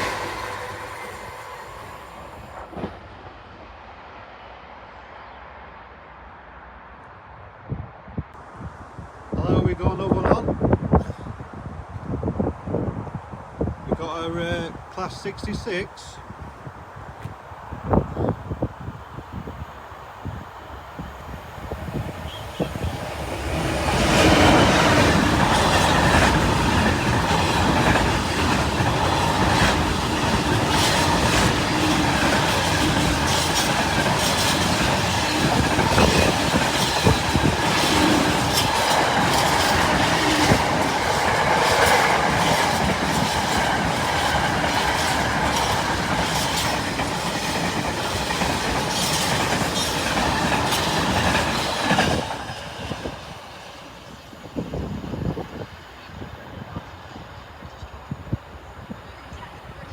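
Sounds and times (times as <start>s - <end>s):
freight train passing: 0.0s - 59.9s.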